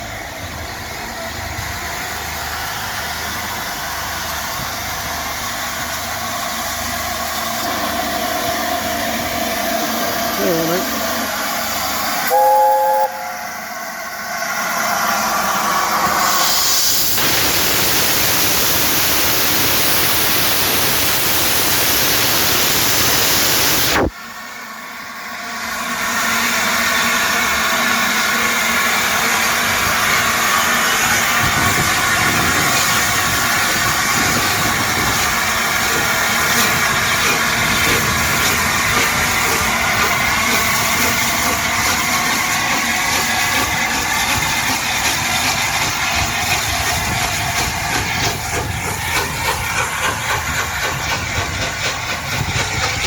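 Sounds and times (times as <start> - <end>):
steam hissing: 0.0 - 24.1, 26.2 - 53.0
steam locomotive chime whistle: 12.2 - 13.8.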